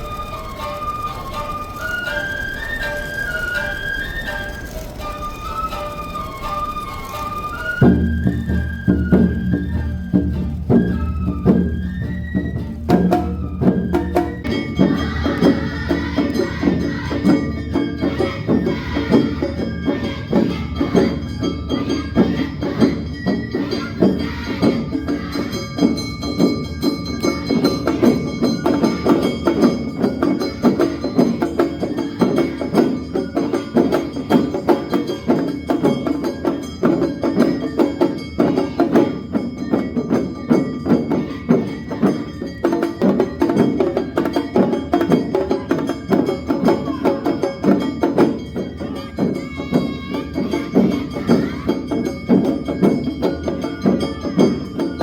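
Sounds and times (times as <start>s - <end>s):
drums beating: 0.0s - 55.0s
sustained ringing tones: 0.0s - 55.0s
hand gongs clanging: 12.3s - 55.0s.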